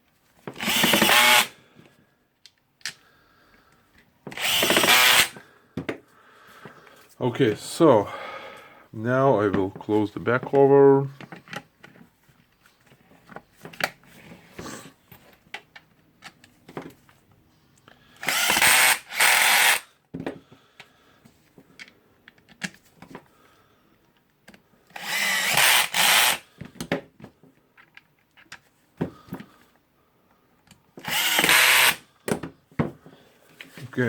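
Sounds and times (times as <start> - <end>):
power screwdriver driving screws: 0.6 - 1.6, 4.3 - 5.4, 18.2 - 19.9, 24.9 - 26.5, 31.0 - 32.0
small clicks and handling knocks: 21.6 - 23.3, 24.0 - 24.7, 26.6 - 28.7.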